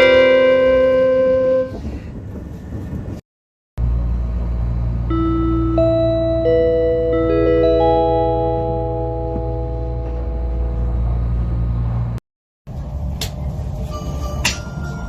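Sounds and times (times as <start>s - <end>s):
low rumble of moving train: 0.0s - 3.2s, 3.8s - 15.0s
bell-like announcement chime: 5.1s - 10.8s.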